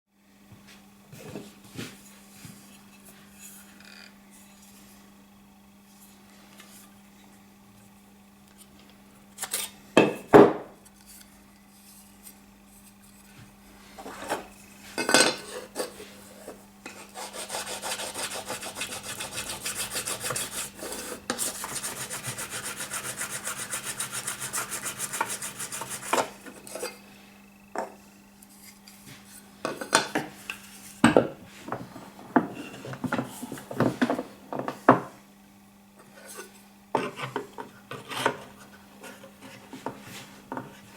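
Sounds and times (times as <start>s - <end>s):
file rasping on steel blade: 16.9s - 26.3s.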